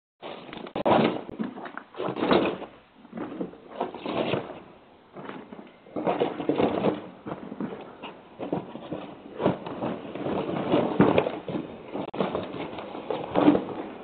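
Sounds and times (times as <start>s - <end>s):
knocking and clattering: 5.2s - 14.0s.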